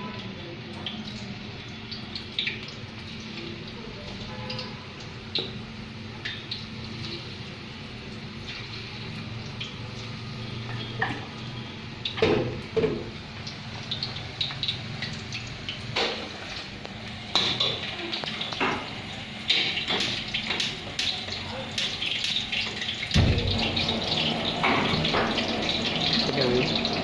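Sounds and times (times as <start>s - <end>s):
steady low hum: 23.2s - 27.0s.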